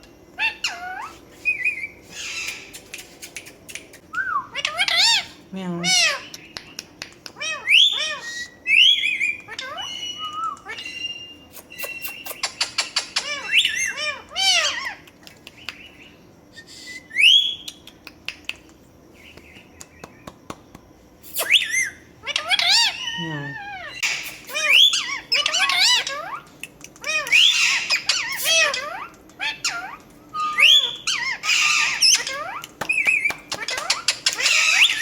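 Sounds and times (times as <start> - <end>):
parrot whistles and squawks: 0.4 - 6.4, 7.4 - 15.0, 16.6 - 17.8, 21.2 - 35.0
parrot clicks: 6.2 - 7.6, 15.0 - 16.0, 17.6 - 20.8, 26.6 - 27.4.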